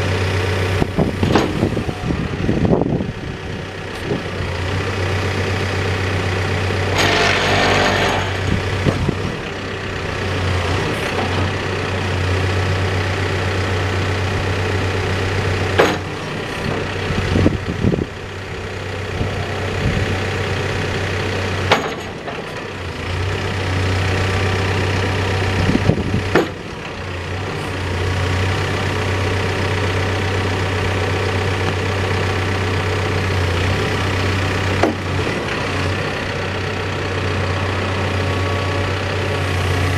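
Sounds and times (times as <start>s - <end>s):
diesel engine running: 0.0s - 39.9s
boom and bucket clunks: 1.0s - 1.7s, 15.8s - 16.2s, 21.7s - 22.5s.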